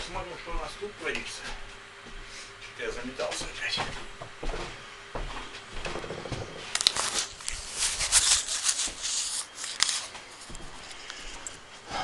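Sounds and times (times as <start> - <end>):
rustling handling noise: 6.7 - 11.7.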